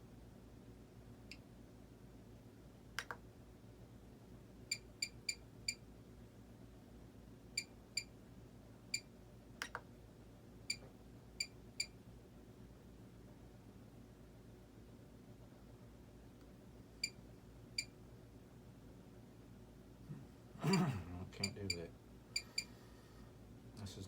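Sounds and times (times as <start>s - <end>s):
sharp clicks: 3.0s - 3.2s, 9.6s - 9.9s.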